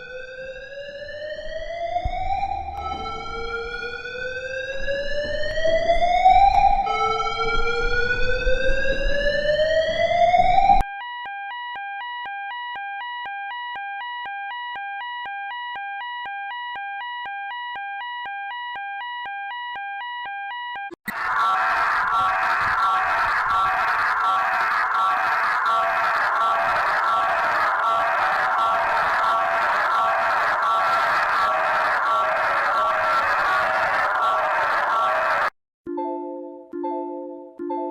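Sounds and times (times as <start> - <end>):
fire alarm sweeping tone: 0.0 - 35.5
two-pitch emergency alert tone: 0.0 - 35.5
room noise: 21.1 - 35.5.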